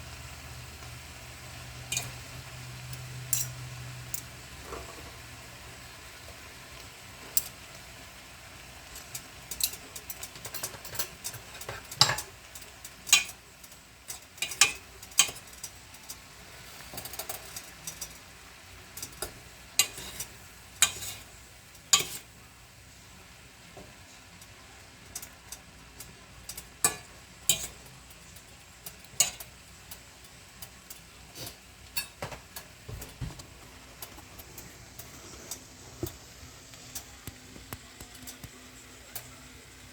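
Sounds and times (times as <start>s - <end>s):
faint sizzle: 0.0s - 39.9s
metal utensil scraping pan: 1.9s - 2.3s, 2.9s - 5.3s, 8.8s - 18.3s, 18.9s - 22.4s, 25.1s - 33.2s.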